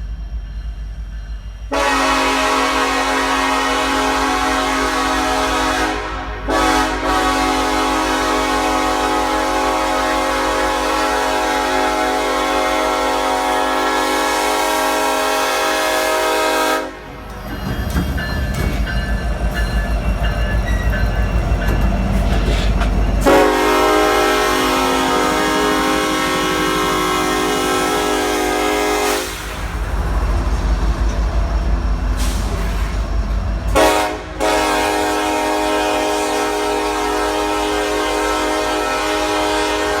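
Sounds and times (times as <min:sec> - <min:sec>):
low pulsing train rumble: 0:00.0 - 0:40.0
locomotive air horn chord: 0:01.7 - 0:17.2, 0:23.2 - 0:29.7, 0:33.7 - 0:40.0.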